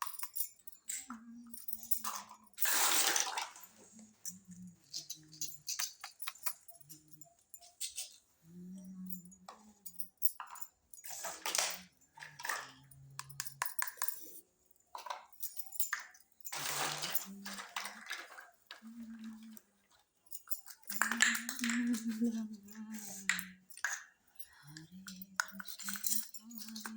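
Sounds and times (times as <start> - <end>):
plastic toy pieces clattering: 0.0 - 6.8, 10.4 - 19.6, 20.3 - 24.2, 24.8 - 26.9
person humming: 8.4 - 10.0, 21.0 - 23.4.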